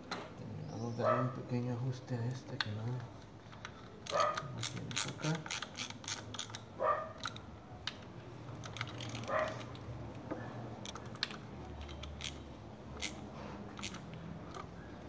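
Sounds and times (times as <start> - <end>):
hand tool and plastic clicks: 2.5 - 9.9, 10.8 - 14.8.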